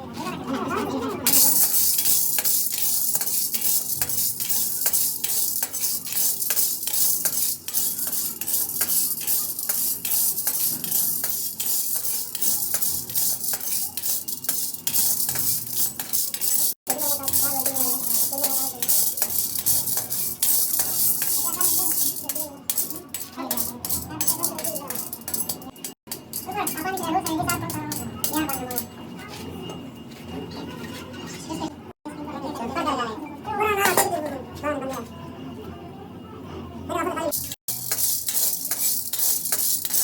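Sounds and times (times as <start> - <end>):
small metal pieces clinking: 1.3 - 28.8, 37.4 - 40.0.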